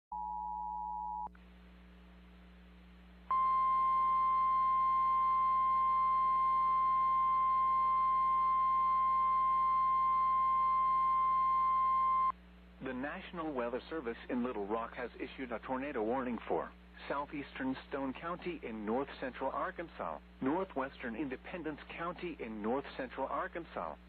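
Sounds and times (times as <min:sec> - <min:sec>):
steady alarm tone: 0:03.3 - 0:12.3.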